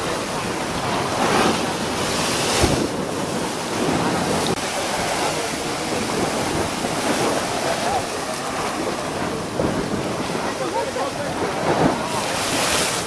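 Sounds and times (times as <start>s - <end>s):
sea waves breaking: 0.0s - 13.0s
wind buffeting microphone: 0.0s - 13.0s.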